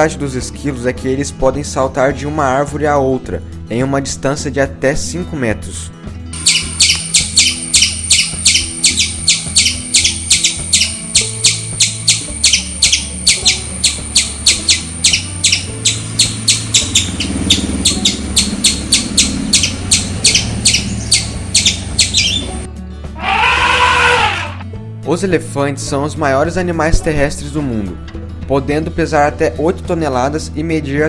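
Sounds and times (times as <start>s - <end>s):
soft background music: 0.0s - 31.0s
squirrel alarm chirps: 6.4s - 24.6s.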